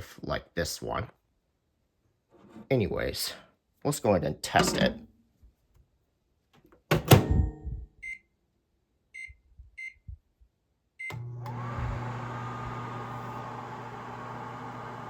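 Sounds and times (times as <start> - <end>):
microwave door clunk: 4.6 - 5.0, 6.9 - 7.6
microwave humming with fan: 11.1 - 15.0.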